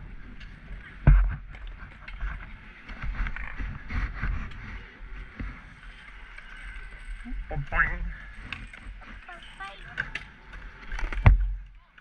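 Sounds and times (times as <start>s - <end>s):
bicycle rattling and rumbling: 0.0s - 12.0s.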